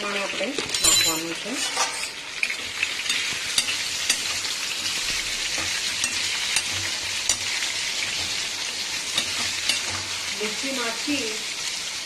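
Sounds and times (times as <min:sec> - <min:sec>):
potatoes sizzling in hot oil: 0:00.0 - 0:12.0
spatula clicking against pan: 0:03.1 - 0:04.4, 0:09.1 - 0:09.9.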